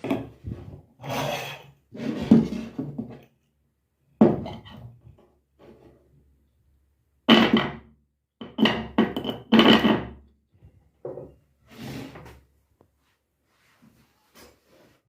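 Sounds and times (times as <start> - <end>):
knocking and scraping of tools: 0.0 - 1.3, 1.9 - 3.3, 8.4 - 12.4.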